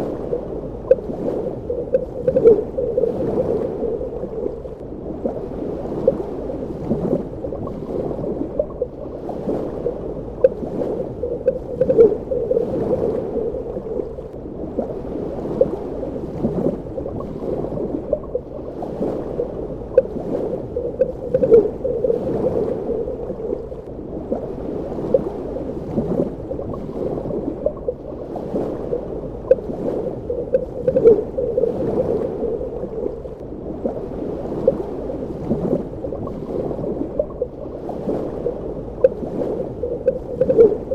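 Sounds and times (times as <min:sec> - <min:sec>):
muffled underwater water rush: 0:00.0 - 0:40.9
bubbling pops and gurgles: 0:10.3 - 0:14.1, 0:19.9 - 0:23.5, 0:39.9 - 0:40.9.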